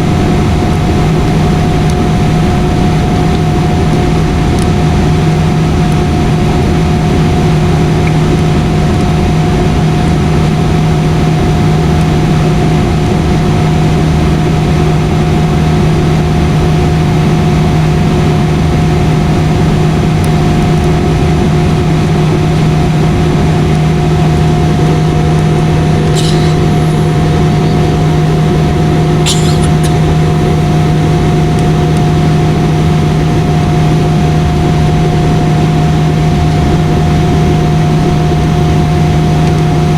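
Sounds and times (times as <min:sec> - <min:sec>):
airliner cabin engine drone: 0:00.0 - 0:39.9.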